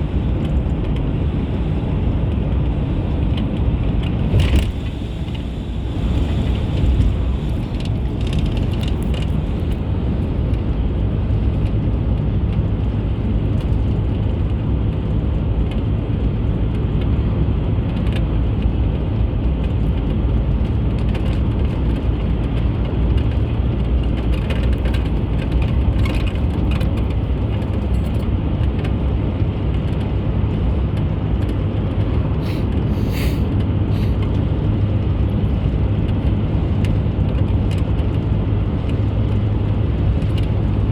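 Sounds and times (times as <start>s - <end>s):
car road and engine rumble: 0.0s - 40.9s
faint clicks and rattles: 6.9s - 9.8s.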